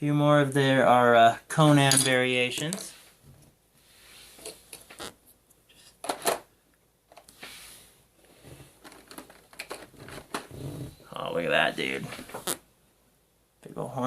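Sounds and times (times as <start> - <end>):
plastic clicks and rattles: 8.8 - 10.5.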